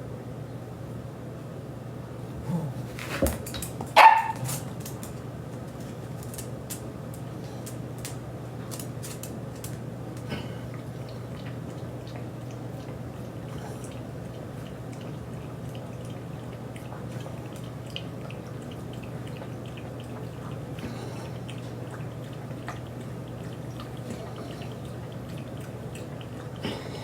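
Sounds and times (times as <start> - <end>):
steady low hum: 0.0 - 27.0
dog barking: 4.0 - 4.6.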